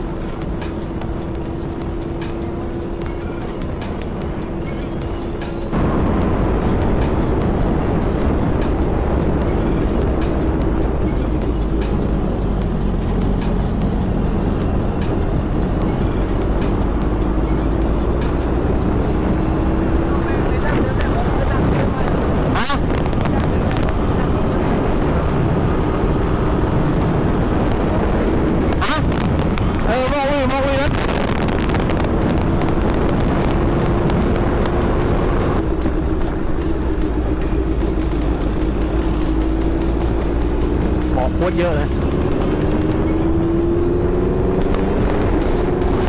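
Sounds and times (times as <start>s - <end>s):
motorcycle engine running: 0.0s - 46.0s
wind rushing on microphone: 5.7s - 13.0s, 18.1s - 46.0s.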